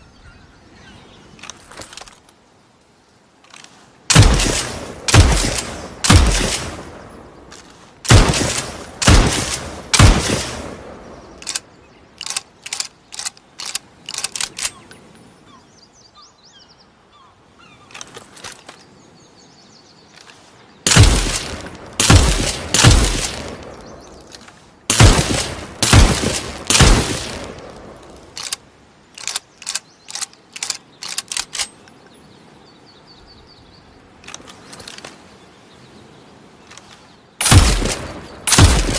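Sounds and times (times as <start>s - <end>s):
rifle shots echoing: 4.1s - 7.1s, 8.1s - 11.0s, 20.9s - 24.1s, 24.9s - 28.5s, 37.4s - 38.9s
sharp mechanical clicks: 11.4s - 14.9s, 28.3s - 31.7s.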